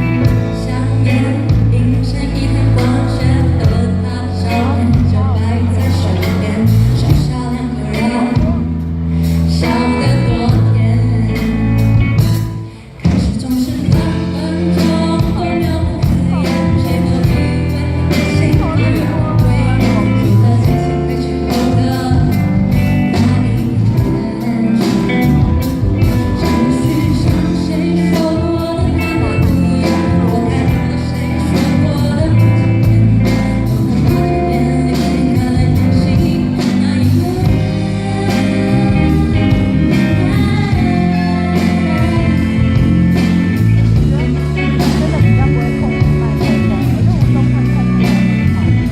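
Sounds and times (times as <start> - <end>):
instrumental backing music: 0.0 - 48.9
woman singing: 0.0 - 48.9.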